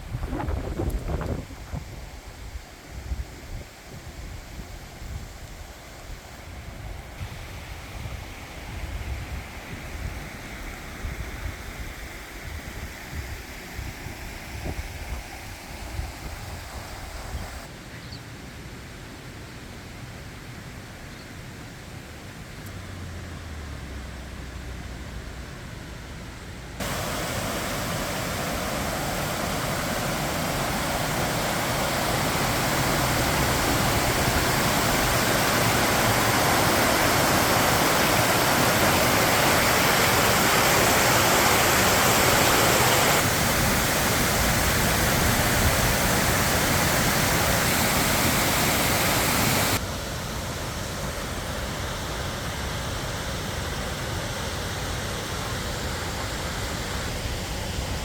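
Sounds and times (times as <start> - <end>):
waterfall rushing: 26.8 - 58.0.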